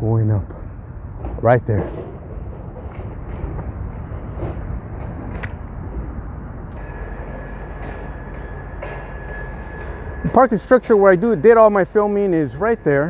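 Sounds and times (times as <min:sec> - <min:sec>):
city traffic rumble: 0:00.0 - 0:13.0
high-pitched whine: 0:04.4 - 0:13.0.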